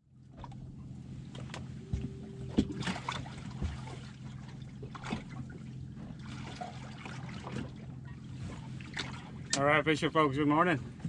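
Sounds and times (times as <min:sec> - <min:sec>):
steady low hum: 0:00.0 - 0:11.0
water splashing against boat hull: 0:00.2 - 0:09.8.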